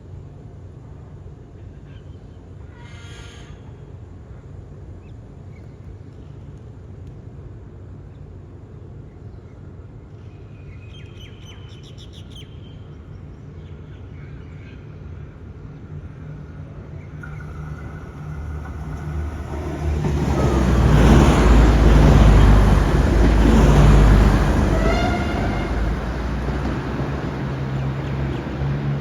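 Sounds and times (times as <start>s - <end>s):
train passing: 15.2s - 29.0s
birds chirping: 17.2s - 29.0s.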